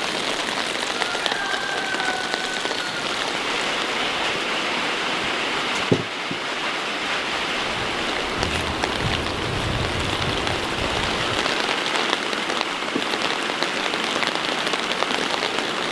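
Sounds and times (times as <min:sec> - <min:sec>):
low rumble: 0:07.6 - 0:11.7.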